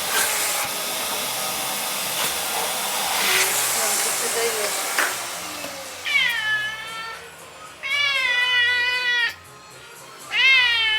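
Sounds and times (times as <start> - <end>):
cat meowing: 6.0 - 9.4, 10.2 - 10.9.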